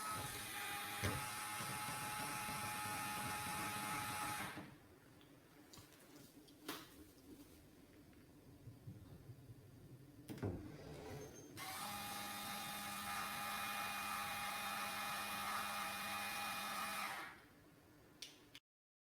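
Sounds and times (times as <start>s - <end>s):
small electric motor whining: 0.0s - 4.7s, 11.6s - 17.4s.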